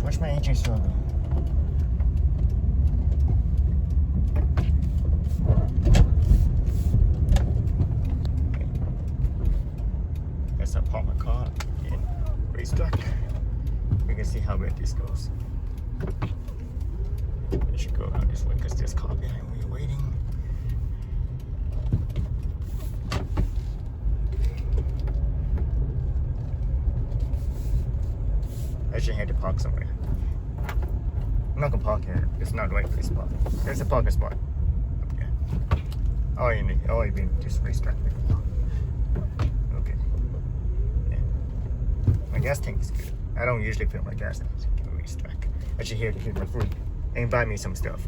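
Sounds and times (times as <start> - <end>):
car engine rumble with misfire: 0.0 - 48.0.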